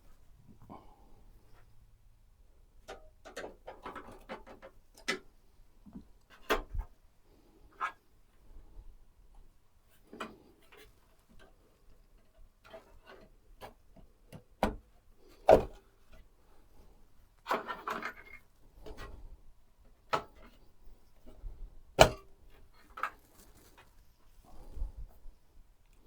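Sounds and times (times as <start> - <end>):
rustling: 22.5 - 26.0.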